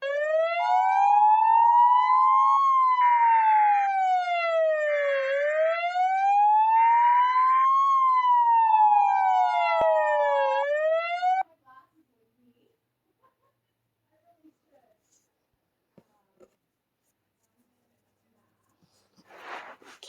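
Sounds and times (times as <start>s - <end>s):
alarm siren tone wailing: 0.0s - 11.4s.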